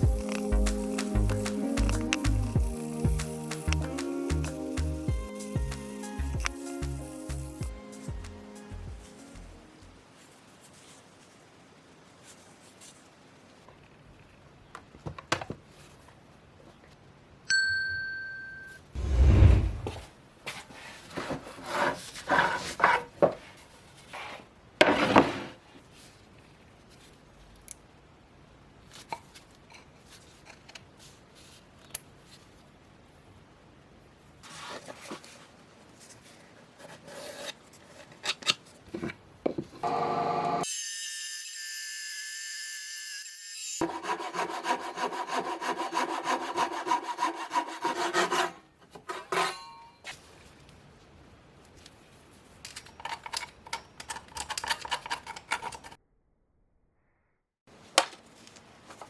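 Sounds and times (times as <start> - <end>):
rubbing and scraping on a tool: 0.0 - 7.6, 10.1 - 13.2, 19.8 - 27.2, 34.4 - 38.9, 43.8 - 50.3
machine hum: 0.0 - 9.0
high steady whine: 0.0 - 10.0
metal ringing ding: 17.5 - 18.8.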